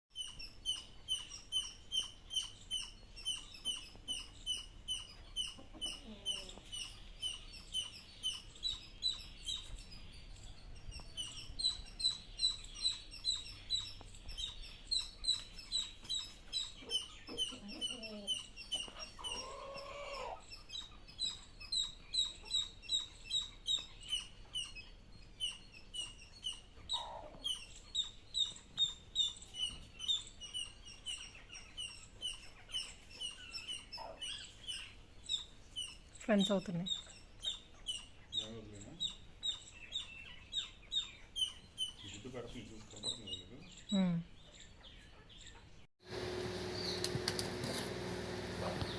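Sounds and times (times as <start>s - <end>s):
hen clucking: 0.2s - 9.2s, 15.2s - 24.7s, 26.8s - 29.0s
chicks peeping: 0.2s - 45.9s, 48.4s - 48.9s.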